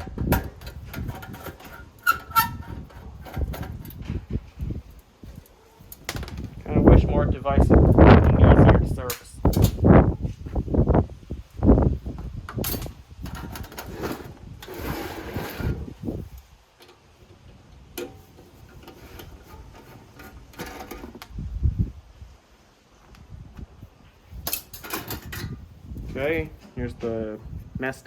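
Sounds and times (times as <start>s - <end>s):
metal and plastic parts rattling: 0.0s - 4.8s, 12.5s - 14.8s, 18.0s - 21.3s, 24.4s - 25.6s.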